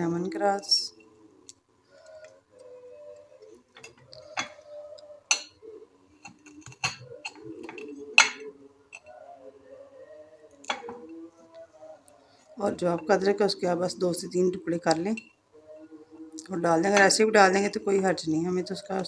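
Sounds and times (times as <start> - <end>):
kitchen utensils clicking: 5.3 - 5.6, 6.2 - 9.1.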